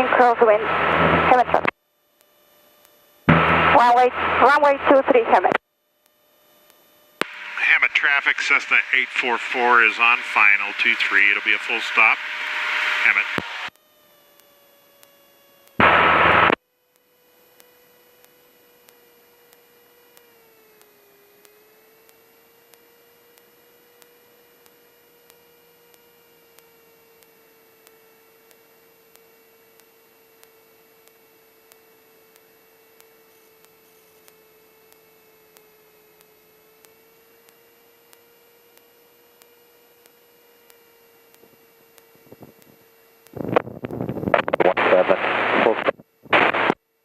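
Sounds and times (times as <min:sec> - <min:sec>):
radio transmission: 0:00.0 - 0:01.7, 0:03.3 - 0:05.6, 0:07.2 - 0:13.7, 0:15.8 - 0:16.6, 0:43.4 - 0:46.8
faint electrical whine: 0:00.0 - 0:47.0.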